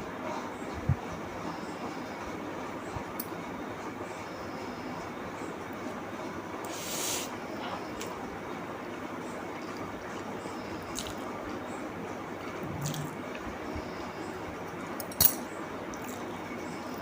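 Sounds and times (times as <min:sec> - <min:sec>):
steady hiss: 0:06.6 - 0:07.5
wet mouth eating sounds: 0:09.7 - 0:11.3, 0:12.6 - 0:13.5.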